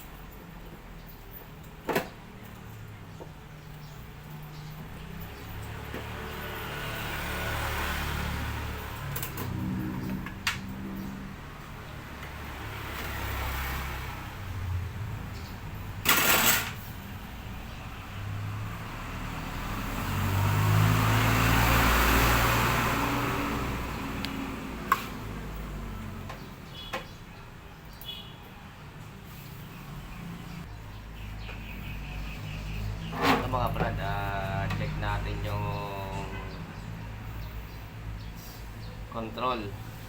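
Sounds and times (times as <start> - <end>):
vehicle passing by: 4.2 - 26.7, 29.2 - 40.0.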